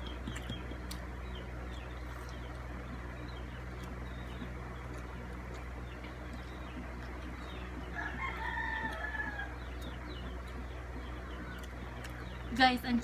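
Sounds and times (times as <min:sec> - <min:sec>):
steady low hum: 0:00.0 - 0:13.0
rooster crowing: 0:07.9 - 0:09.7.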